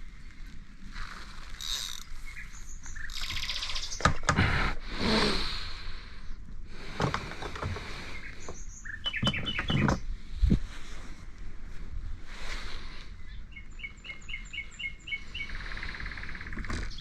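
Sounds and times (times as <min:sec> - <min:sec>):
small birds chirping: 0:01.5 - 0:05.2, 0:07.6 - 0:10.1, 0:13.0 - 0:17.0
buzzy bird trill: 0:01.6 - 0:04.1
knocks and handling noise: 0:06.9 - 0:10.1.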